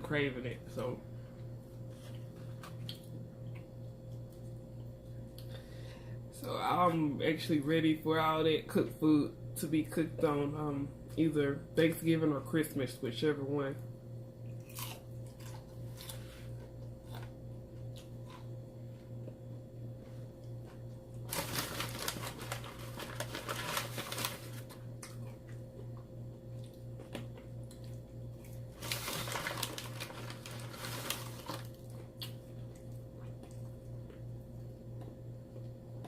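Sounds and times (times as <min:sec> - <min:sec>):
steady low hum: 0:00.0 - 0:36.0
crunching of eating fried chicken: 0:01.6 - 0:05.7, 0:14.4 - 0:36.0.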